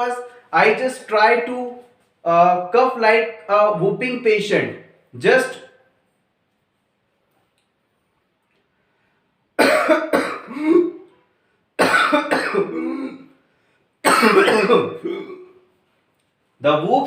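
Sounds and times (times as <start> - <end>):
man coughing with whoops: 9.6 - 11.2, 11.8 - 13.4, 14.0 - 15.6.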